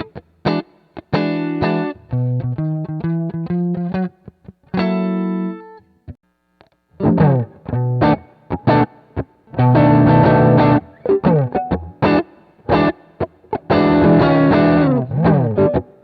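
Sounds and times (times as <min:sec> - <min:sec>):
distorted guitar chords: 0:00.0 - 0:05.6, 0:06.3 - 0:16.0
electric guitar picked notes: 0:06.9 - 0:16.0.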